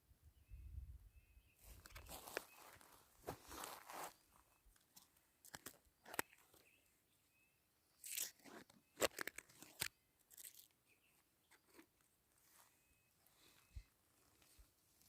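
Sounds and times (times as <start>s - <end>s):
footsteps crunching on forest floor: 1.6s - 5.8s, 12.4s - 15.0s
twigs snapping: 5.4s - 6.4s.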